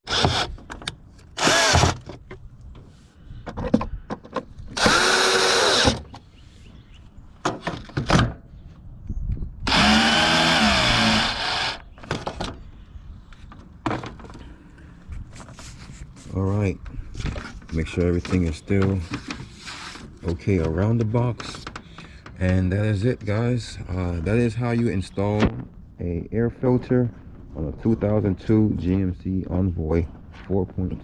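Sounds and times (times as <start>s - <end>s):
power drill driving screws: 0.1s - 0.6s, 1.4s - 2.0s, 4.8s - 6.0s, 9.7s - 11.9s
handling clicks and knocks: 20.2s - 23.4s.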